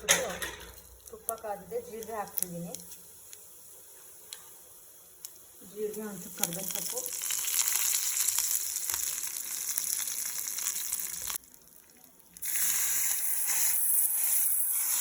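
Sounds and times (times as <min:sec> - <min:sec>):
seeds sizzling in hot oil: 0:00.0 - 0:15.0.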